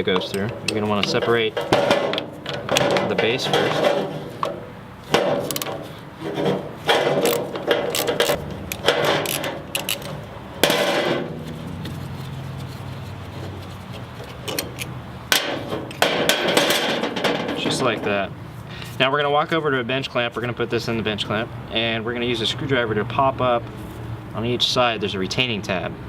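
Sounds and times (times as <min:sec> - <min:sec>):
metal parts knocking and clattering: 0:00.0 - 0:11.6, 0:14.2 - 0:18.2
scraping: 0:00.0 - 0:18.3.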